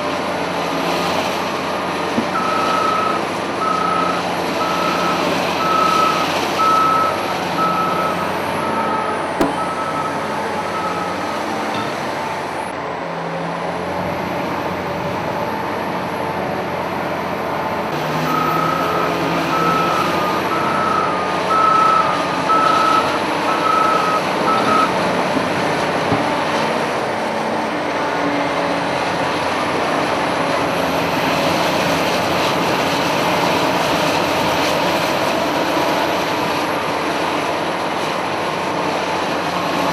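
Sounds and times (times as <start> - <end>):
wheel loader diesel engine running: 0.0 - 39.9
reversing alarm beeping: 2.3 - 12.7, 18.3 - 25.0.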